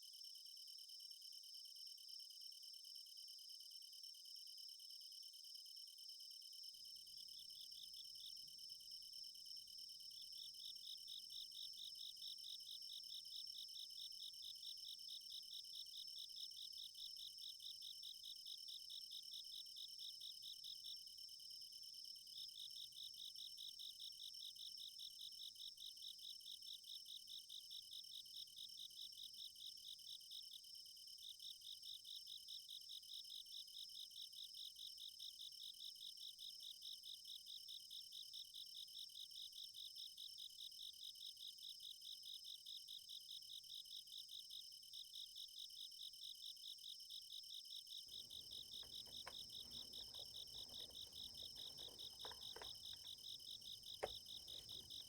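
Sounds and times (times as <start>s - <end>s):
insects chirping: 48.0s - 55.0s
keyboard key clicks: 48.3s - 53.2s, 53.8s - 55.0s.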